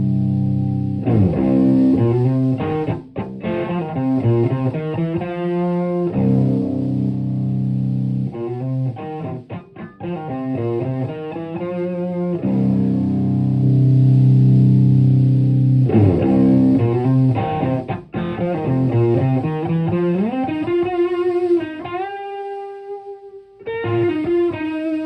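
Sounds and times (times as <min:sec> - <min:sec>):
overdriven electric guitar riff: 0:00.0 - 0:25.0.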